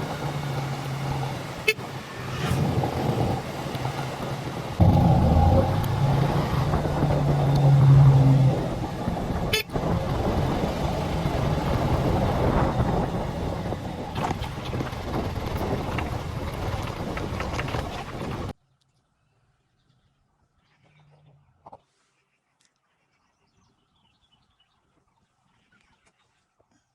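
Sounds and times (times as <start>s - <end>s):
motorcycle engine: 0.0s - 18.5s
wind: 0.0s - 26.9s
even rushing noise: 1.9s - 18.4s
low horn-like tone: 4.8s - 9.9s.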